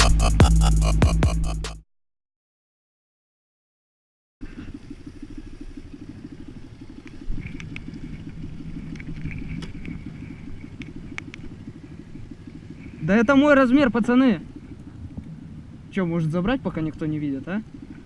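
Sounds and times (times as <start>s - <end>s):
small engine idling: 4.4s - 8.6s.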